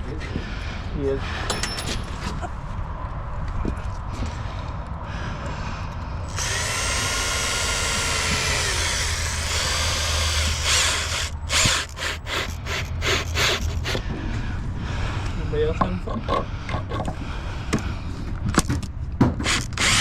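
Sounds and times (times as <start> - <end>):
power drill driving screws: 6.3 - 14.0, 19.4 - 20.0.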